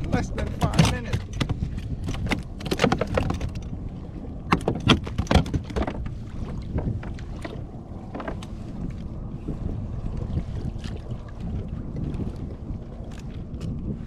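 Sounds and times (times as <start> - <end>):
wind buffeting microphone: 0.0 - 14.0
knocks and clatter: 0.5 - 3.7, 4.5 - 6.2.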